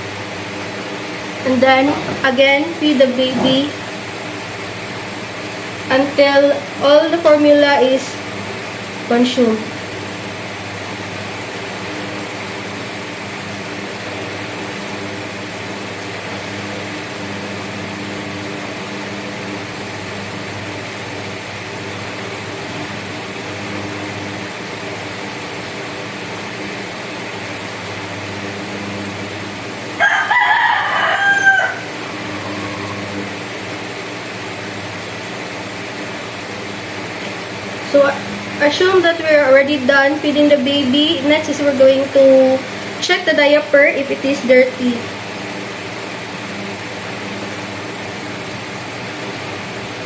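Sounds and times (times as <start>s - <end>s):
steady background hum: 0.0s - 50.0s
rooster crowing: 30.0s - 33.4s.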